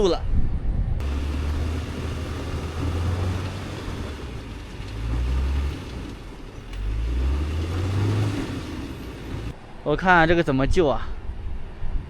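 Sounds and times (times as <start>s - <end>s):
engine low rumble: 1.0s - 9.8s.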